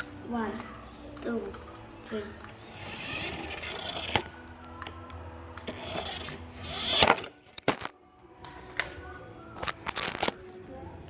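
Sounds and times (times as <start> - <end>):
camera toppling over: 2.8 - 4.9, 5.6 - 8.0, 9.6 - 10.5.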